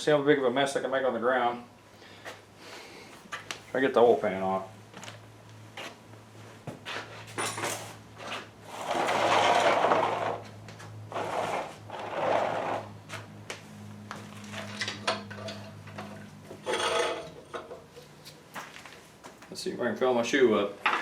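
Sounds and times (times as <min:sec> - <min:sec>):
metal scraping: 0:14.4 - 0:18.1.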